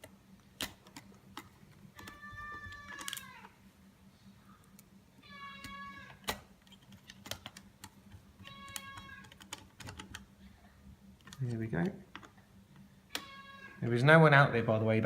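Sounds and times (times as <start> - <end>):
clicks of screws and plastic parts: 0.0 - 3.5, 5.6 - 10.3
cat meowing: 2.0 - 3.5, 5.2 - 6.2, 8.4 - 9.3, 13.1 - 13.9.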